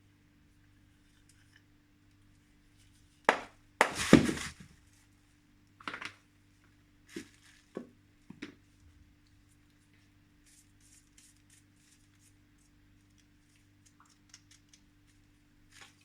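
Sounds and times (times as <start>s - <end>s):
chalk scraping and tapping: 10.4s - 14.6s
chalk crunching: 10.4s - 16.0s
chalk snapping: 10.5s - 14.9s.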